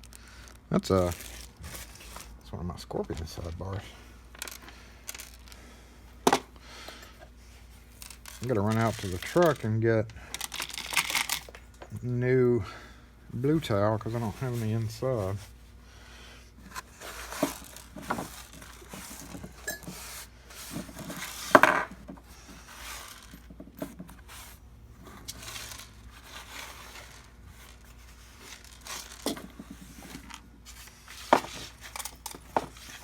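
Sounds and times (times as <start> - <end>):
small metal parts clinking: 0.0 - 2.3, 4.3 - 6.4, 7.9 - 11.9, 16.8 - 22.0, 22.6 - 23.6, 25.2 - 33.0.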